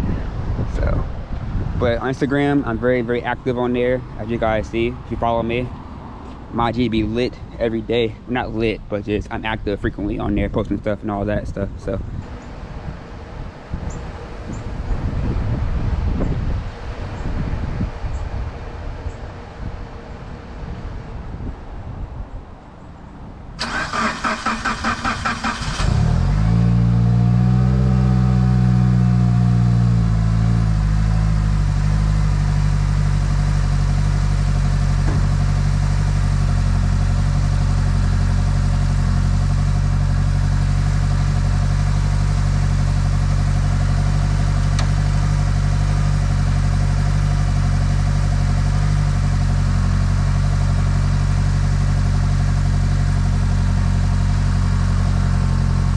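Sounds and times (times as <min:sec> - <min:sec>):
starter motor cranking: 0:23.6 - 0:26.1
car engine revving and idling: 0:23.6 - 0:55.9.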